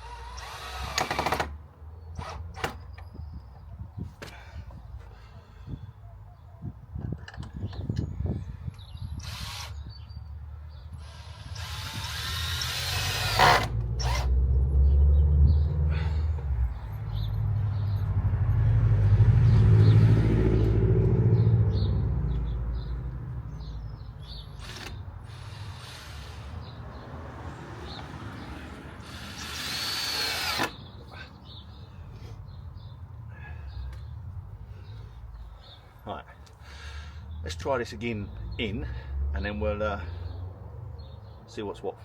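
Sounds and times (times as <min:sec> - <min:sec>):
power drill running: 0:00.0 - 0:01.5, 0:09.2 - 0:09.8, 0:11.0 - 0:14.3, 0:24.6 - 0:26.5, 0:29.0 - 0:30.8
low rumbling: 0:13.0 - 0:35.8.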